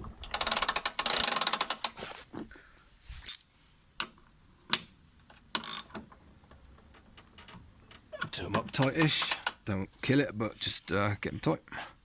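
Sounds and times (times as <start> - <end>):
wheel ratchet clicking: 0.2 - 2.0, 5.5 - 6.0, 8.8 - 9.6.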